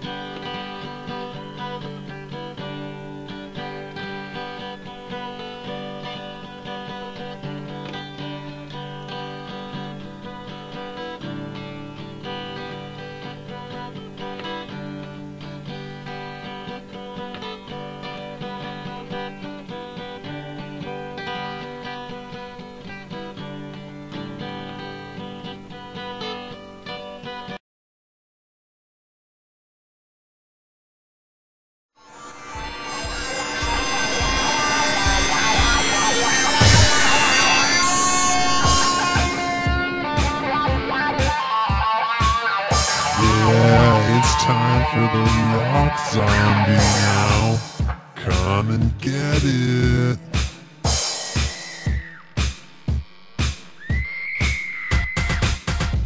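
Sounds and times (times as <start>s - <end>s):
strummed string instrument music: 32.0s - 47.8s.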